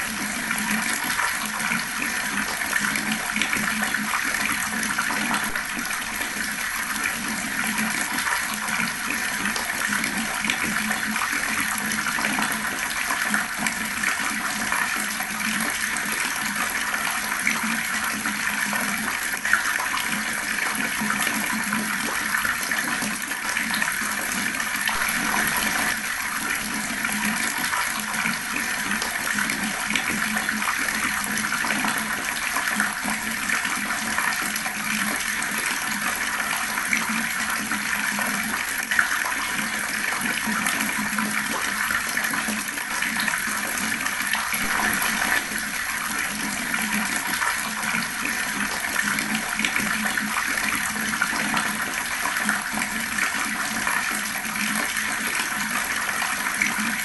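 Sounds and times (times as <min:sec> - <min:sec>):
fast-flowing water: 0:00.0 - 0:57.0.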